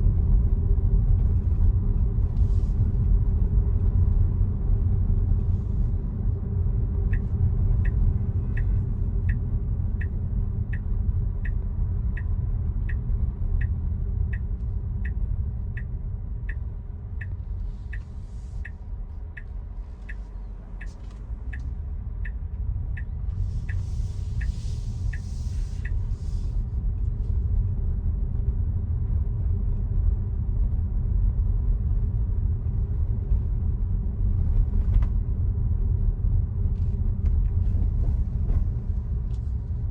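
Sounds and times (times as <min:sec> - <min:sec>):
road and tyre rumble: 0:00.0 - 0:39.9
turn signal ticking: 0:06.0 - 0:26.7.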